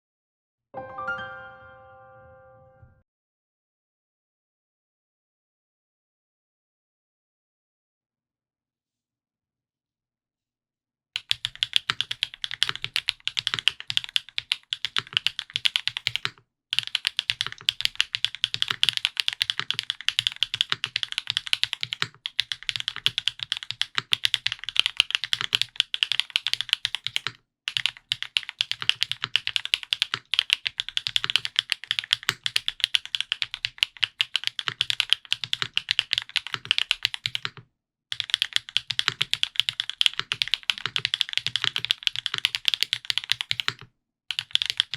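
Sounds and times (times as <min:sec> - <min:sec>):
fast mechanical keyboard typing: 0:11.2 - 0:44.9.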